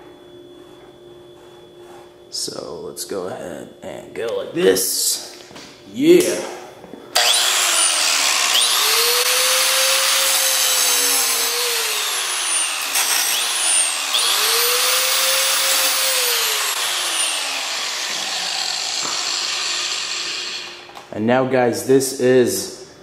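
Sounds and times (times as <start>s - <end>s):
angle grinder grinding metal casing: 7.2s - 21.0s.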